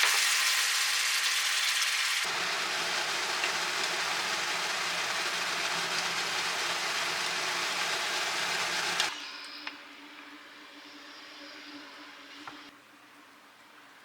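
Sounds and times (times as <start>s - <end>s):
food sizzling in a pan: 0.0s - 9.2s.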